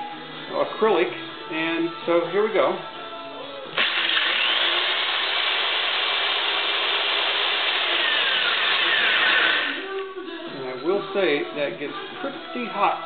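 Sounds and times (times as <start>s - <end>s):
electric drill running: 3.7s - 10.0s
hole saw cutting through acrylic: 3.8s - 9.9s.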